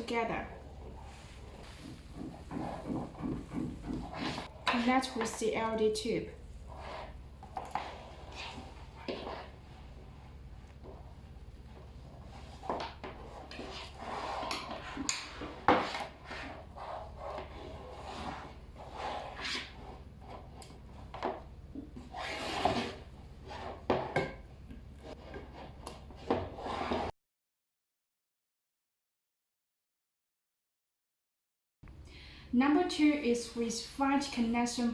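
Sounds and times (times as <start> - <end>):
cables rubbing and rustling: 0.7 - 5.3.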